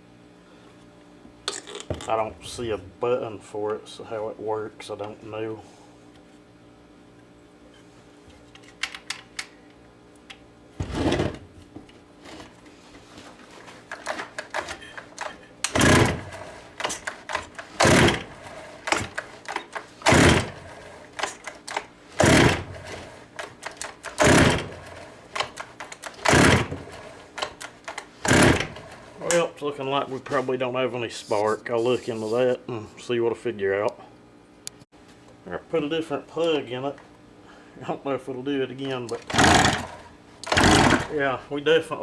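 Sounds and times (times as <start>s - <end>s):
chainsaw rope pulls: 10.8s - 11.4s, 13.6s - 29.4s, 39.1s - 41.4s
engine cranking: 13.9s - 29.4s, 39.1s - 41.3s.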